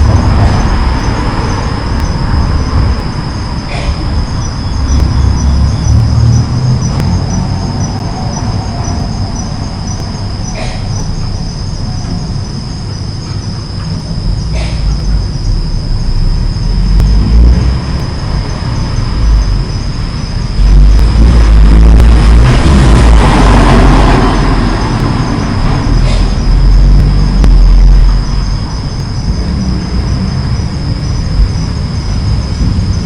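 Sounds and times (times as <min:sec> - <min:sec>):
insects trilling: 0:00.0 - 0:33.0
road traffic rumble: 0:00.0 - 0:33.0.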